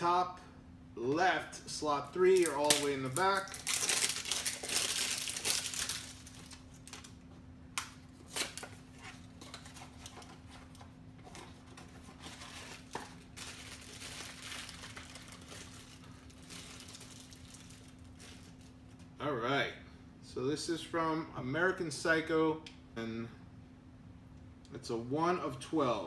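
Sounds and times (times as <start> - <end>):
faint steady hum: 0.0 - 26.0
packaging crinkling and tearing: 2.2 - 7.2, 7.8 - 19.1.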